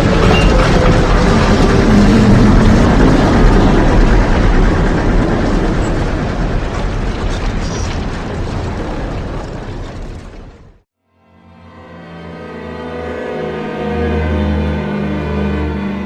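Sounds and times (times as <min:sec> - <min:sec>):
storm rumbling roar: 0:00.0 - 0:10.8.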